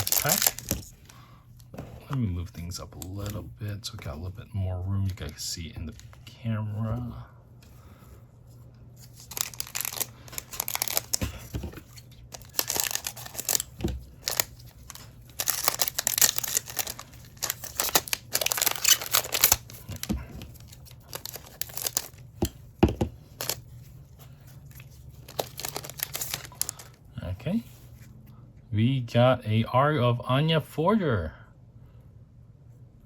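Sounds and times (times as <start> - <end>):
card pack wrapper tearing: 0.0 - 1.2, 9.0 - 22.3, 23.3 - 23.7, 24.7 - 27.0
wrapper crinkling: 0.0 - 1.2, 9.0 - 22.5, 23.2 - 27.0.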